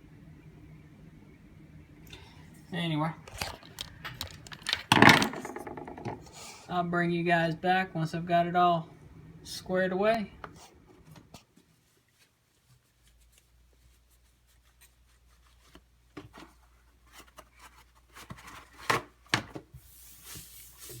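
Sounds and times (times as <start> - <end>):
handling clicks and knocks: 3.3 - 6.2.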